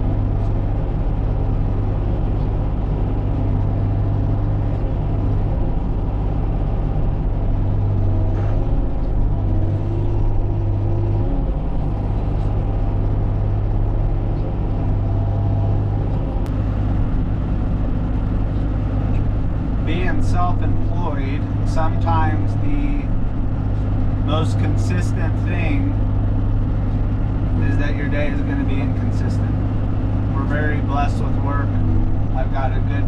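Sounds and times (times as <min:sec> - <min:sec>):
excavator diesel engine running: 0:00.0 - 0:33.0.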